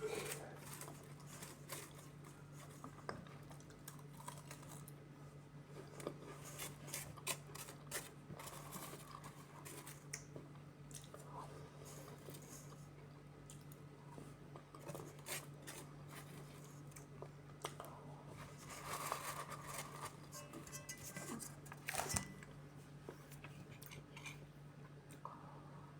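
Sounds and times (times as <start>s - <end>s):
steady low hum: 0.0s - 25.9s
eating clicks and scrapes: 5.8s - 10.3s.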